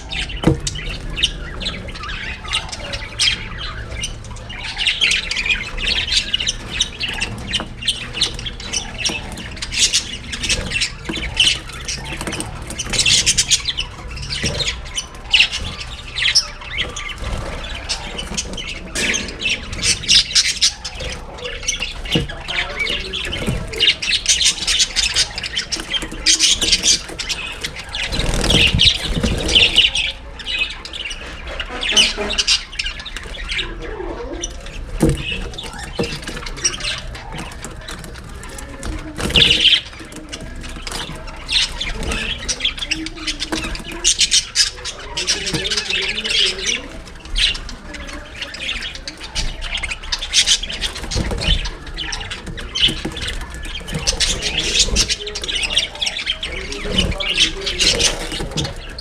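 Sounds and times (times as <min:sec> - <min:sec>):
budgerigars chattering: 0:00.0 - 0:59.0.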